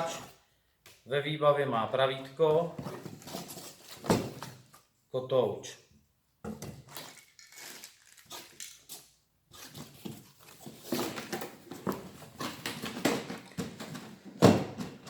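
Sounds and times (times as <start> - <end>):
tools being unpacked: 2.9 - 4.8, 6.8 - 15.0.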